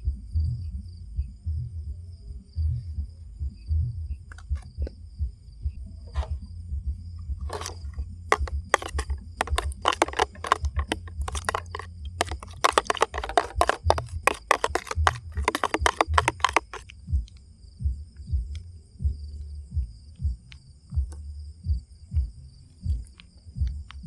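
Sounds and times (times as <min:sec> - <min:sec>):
cracking and crunching snaps: 0:07.5 - 0:17.0.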